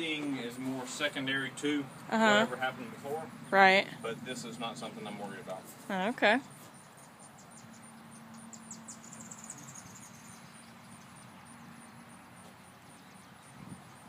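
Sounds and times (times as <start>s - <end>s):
insects chirping: 6.4s - 14.0s.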